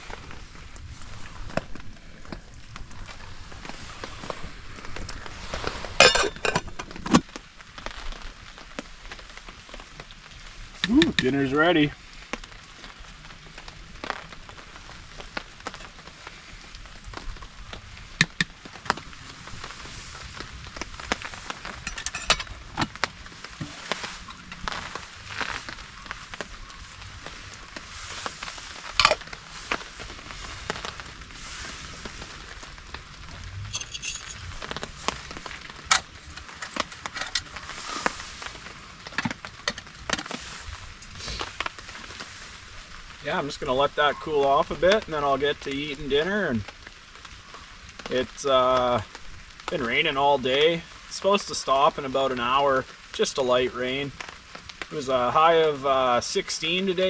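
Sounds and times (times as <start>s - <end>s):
light rain hissing on a tarp: 0.0s - 57.0s
metallic clink: 33.7s - 34.4s.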